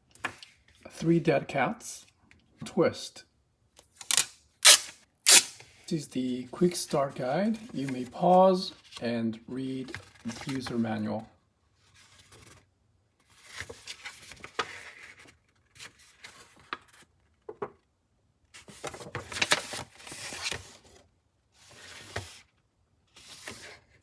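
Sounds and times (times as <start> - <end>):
paper rustling: 6.9 - 9.0, 9.8 - 10.8, 13.4 - 17.1, 18.6 - 21.0.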